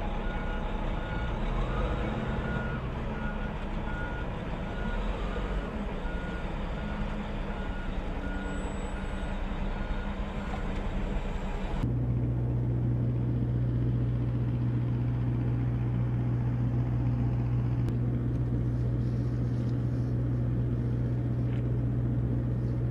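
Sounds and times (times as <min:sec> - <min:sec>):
low engine drone: 0:00.0 - 0:22.9
vehicle reversing alarm beeping: 0:00.2 - 0:11.8.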